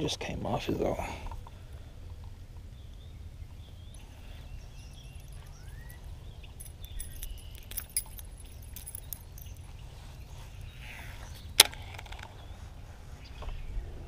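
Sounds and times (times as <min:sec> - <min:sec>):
low steady rumble: 0:00.0 - 0:14.0
faint bird chirps: 0:01.4 - 0:13.9
metallic clicking and jingling: 0:03.9 - 0:10.8.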